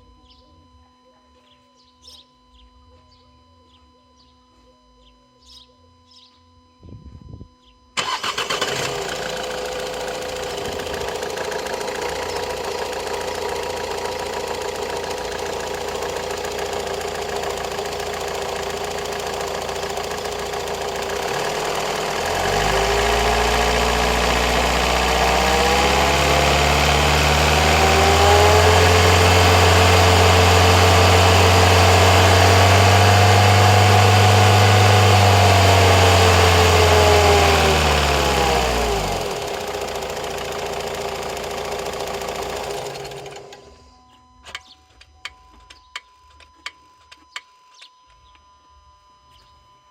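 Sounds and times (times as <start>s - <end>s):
engine clicking noise: 8.0s - 43.8s
diesel engine running: 8.0s - 44.0s.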